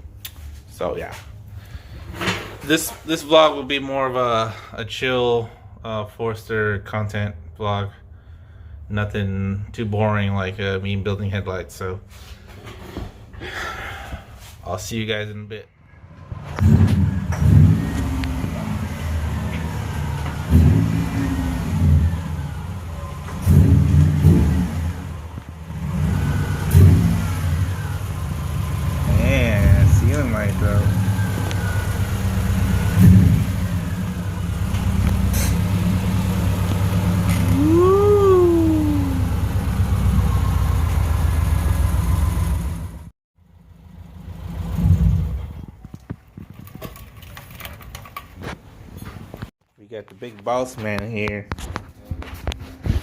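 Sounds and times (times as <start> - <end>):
car engine revving: 15.8 - 45.6.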